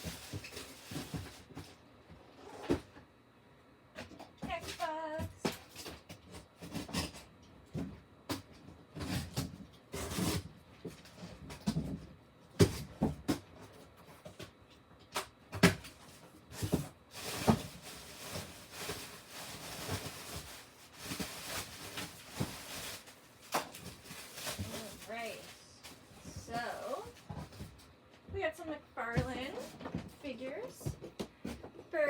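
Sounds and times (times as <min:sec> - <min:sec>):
packaging rustling: 0:16.6 - 0:27.6.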